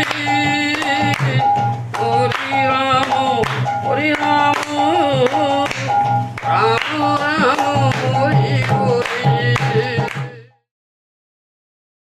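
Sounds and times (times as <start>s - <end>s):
percussion beat: 0.0s - 10.6s
instrumental accompaniment: 0.0s - 10.7s
person singing: 0.0s - 10.7s.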